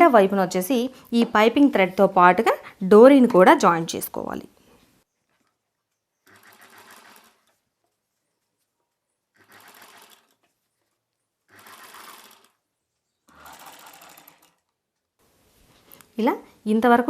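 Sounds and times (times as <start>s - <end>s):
sewing machine stitching: 5.3s - 8.6s, 9.3s - 12.7s, 13.3s - 14.8s.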